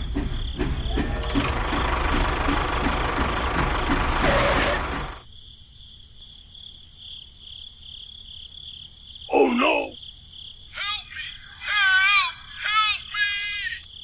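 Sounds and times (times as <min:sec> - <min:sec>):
small machine motor knocking: 0:00.0 - 0:05.2
insects chirping: 0:00.0 - 0:14.0.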